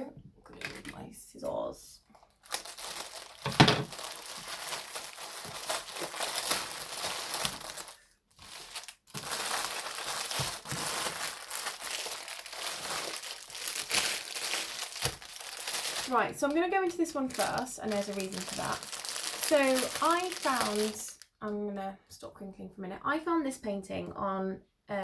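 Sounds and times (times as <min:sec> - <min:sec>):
packaging crinkling: 0:02.2 - 0:16.3, 0:17.1 - 0:21.2.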